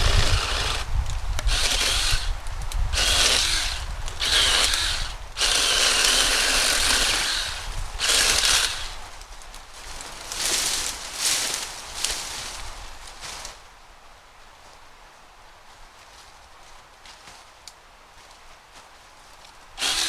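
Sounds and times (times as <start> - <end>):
small chainsaw cutting brush: 0.0 - 9.1, 19.8 - 20.0.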